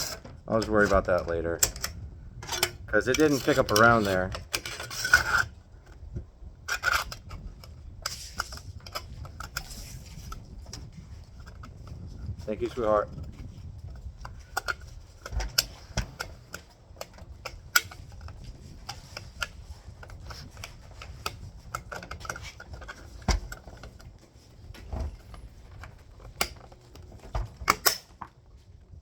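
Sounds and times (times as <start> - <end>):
clicks and taps of small gear: 6.7 - 28.4.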